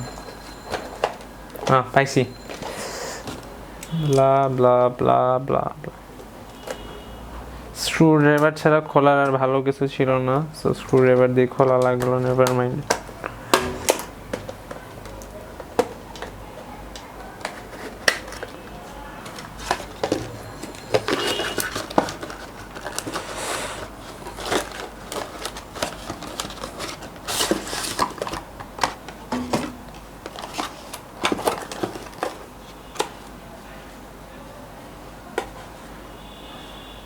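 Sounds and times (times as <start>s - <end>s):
packaging rustling: 19.2s - 29.2s, 29.9s - 32.5s.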